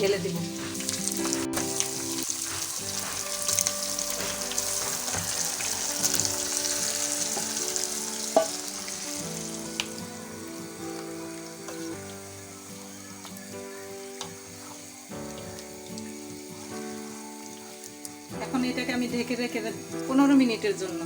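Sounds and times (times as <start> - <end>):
chicken sizzling in oil: 0.0 - 21.0
stirring in a pot: 0.3 - 18.0
utensil clinking on pot: 8.3 - 8.6.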